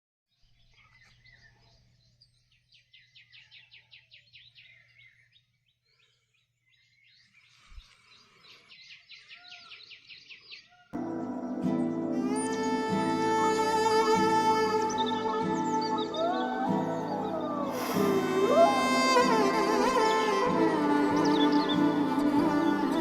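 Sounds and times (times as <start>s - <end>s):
birdsong with repeated high notes: 8.9s - 23.0s
gliding bird calls: 11.0s - 23.0s.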